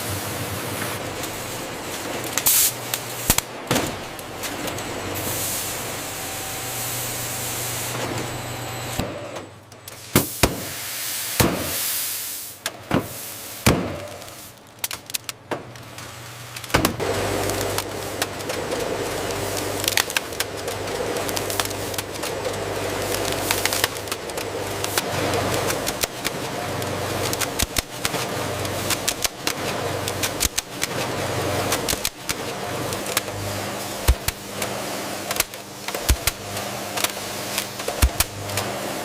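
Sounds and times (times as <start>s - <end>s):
machinery hiss and hum: 0.0s - 14.6s.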